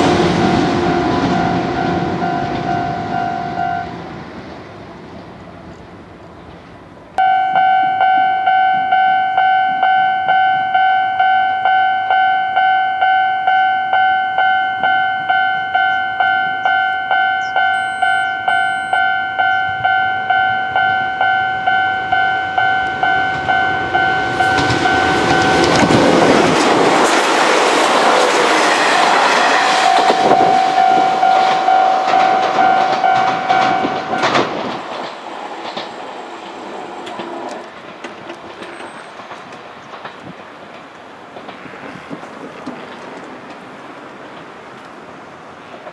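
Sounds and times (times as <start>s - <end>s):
level crossing alarm clanging: 0.0s - 3.9s, 7.2s - 27.5s, 28.4s - 35.1s
train wheels clattering: 14.6s - 45.0s.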